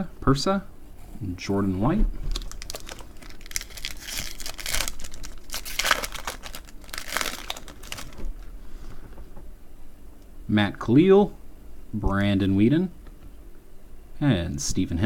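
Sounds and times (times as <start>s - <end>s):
foil wrapper crinkling and tearing: 2.3s - 8.4s.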